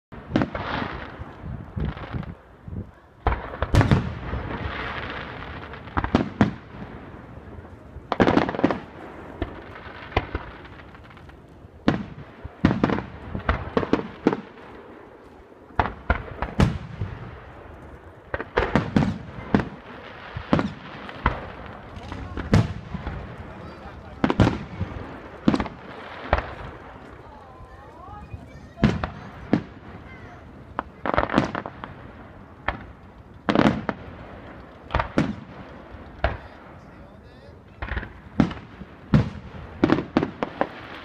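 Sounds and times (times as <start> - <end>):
fireworks bangs: 0.1 - 41.0
fireworks crackling: 0.1 - 41.0.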